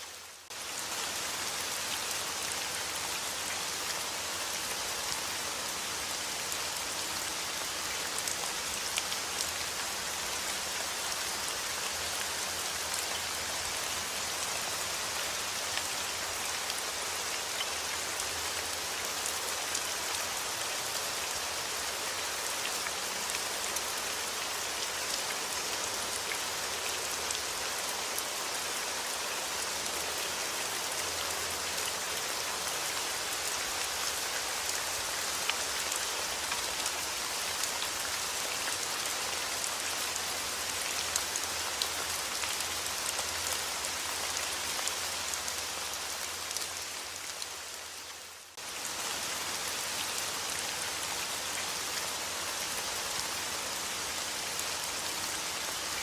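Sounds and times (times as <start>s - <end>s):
steady rain falling: 0.0s - 56.0s.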